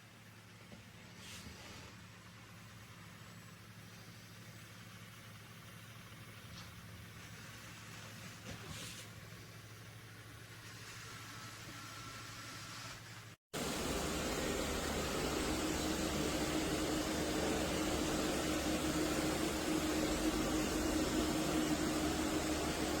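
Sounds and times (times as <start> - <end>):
rushing machine noise: 13.6 - 23.0.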